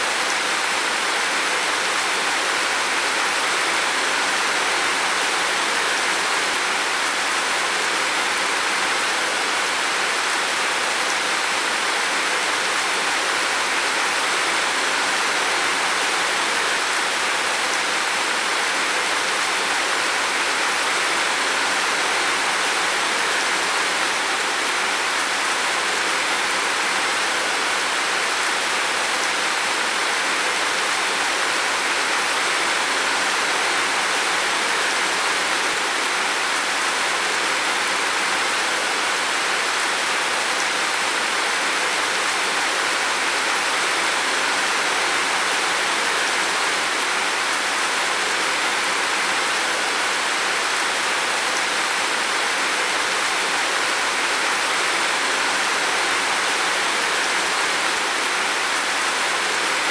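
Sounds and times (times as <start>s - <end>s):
heavy rain on a roof: 0.0s - 59.9s.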